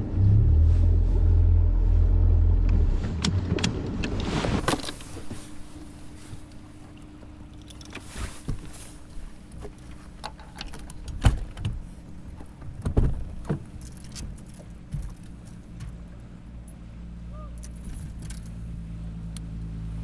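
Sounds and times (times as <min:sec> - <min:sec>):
boat motor humming: 0:00.0 - 0:20.0.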